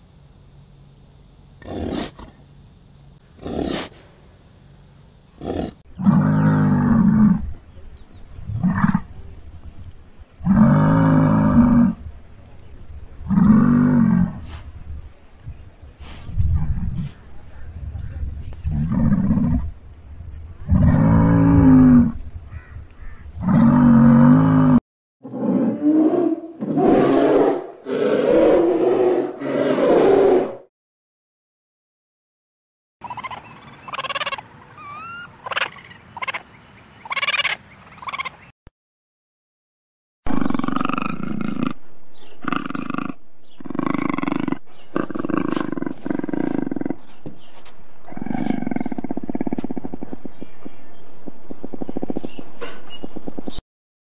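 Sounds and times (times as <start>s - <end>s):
large animal roaring: 5.4s - 7.6s, 10.4s - 12.1s, 13.2s - 14.6s, 18.6s - 19.7s, 20.6s - 22.2s, 23.4s - 30.6s, 40.3s - 50.8s
large mammal deep calls: 5.4s - 7.6s, 40.3s - 53.1s.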